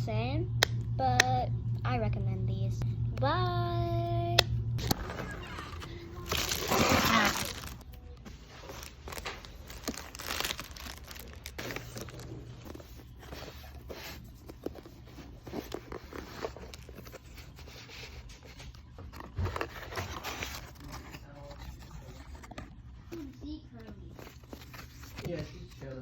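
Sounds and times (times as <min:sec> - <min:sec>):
crinkling and rustling: 0:04.8 - 0:26.0.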